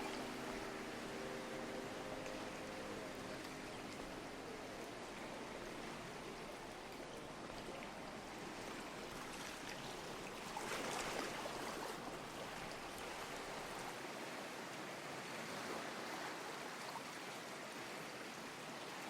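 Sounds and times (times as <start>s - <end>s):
wave splashing: 0.0s - 13.9s
small waves washing against pier: 0.0s - 19.0s.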